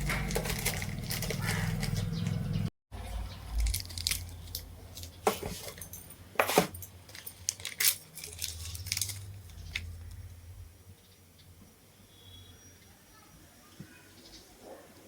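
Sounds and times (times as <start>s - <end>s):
metal parts and tools clinking: 0.0s - 2.1s, 3.6s - 9.9s.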